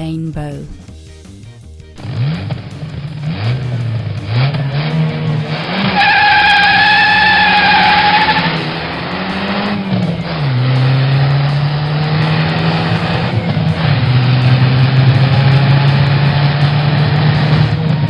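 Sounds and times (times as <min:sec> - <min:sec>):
car engine revving: 0:01.9 - 0:18.0
tyre squeal: 0:04.3 - 0:18.0.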